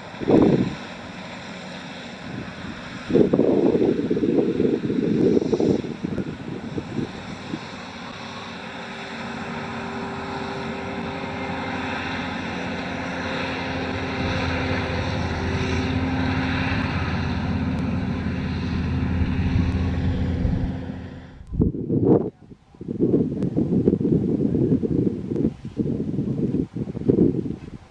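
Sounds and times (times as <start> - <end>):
fans and threshing gear rushing: 0.0 - 22.2
diesel engine droning: 0.0 - 22.3.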